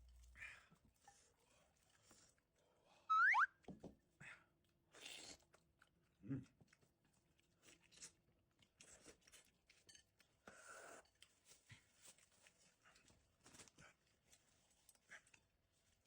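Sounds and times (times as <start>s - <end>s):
rustling and handling noises: 11.2s - 16.0s.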